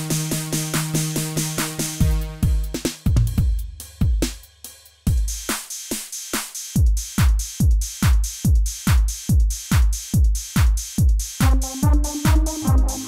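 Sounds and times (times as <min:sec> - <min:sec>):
electronic dance drum pattern: 0:00.0 - 0:13.0
hi-hats: 0:00.0 - 0:13.0
kick drum: 0:02.0 - 0:04.4, 0:05.1 - 0:05.5, 0:06.8 - 0:13.0
held synth chord: 0:11.4 - 0:13.0.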